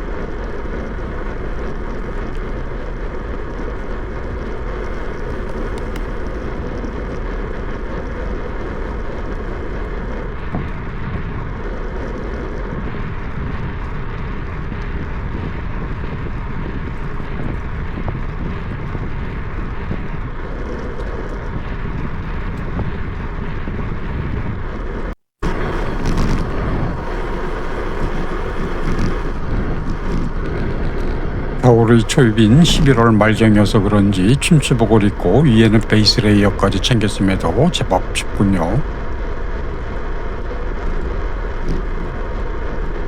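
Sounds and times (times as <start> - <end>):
wind rush on microphone: 0.0 - 31.6
bicycle road noise: 0.0 - 31.7.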